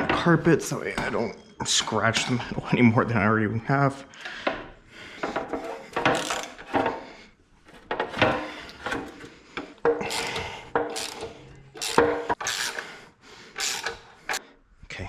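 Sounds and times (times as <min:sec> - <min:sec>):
hand tools clattering: 0:07.7 - 0:12.9
hand ratchet clicking: 0:09.7 - 0:12.9, 0:13.5 - 0:14.4.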